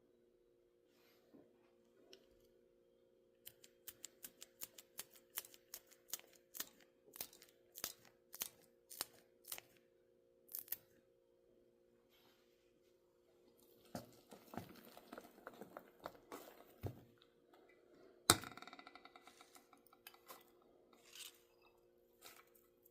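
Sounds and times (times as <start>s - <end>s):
faint steady hum: 0.0s - 22.9s
blade cutting with sharp clicks: 3.4s - 9.8s.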